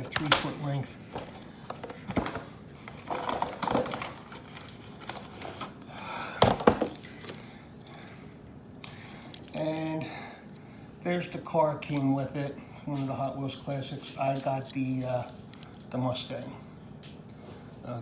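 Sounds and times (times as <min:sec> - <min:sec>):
plastic packaging rustling: 0:00.0 - 0:05.8, 0:13.5 - 0:15.9.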